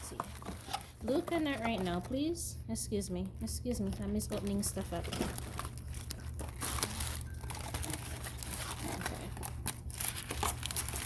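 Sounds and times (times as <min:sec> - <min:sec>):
packaging crinkling and rustling: 0:00.0 - 0:02.2, 0:03.9 - 0:11.0
packaging tearing: 0:04.8 - 0:11.0.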